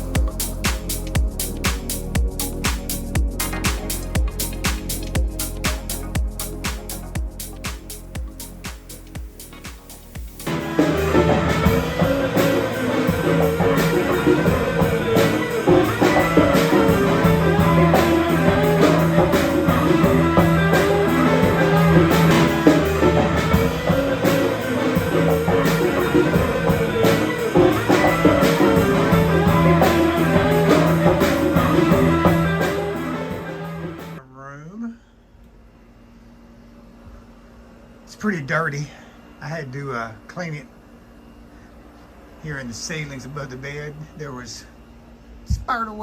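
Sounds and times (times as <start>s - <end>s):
rock music: 0.0s - 34.2s
steady drum beat: 0.0s - 34.2s.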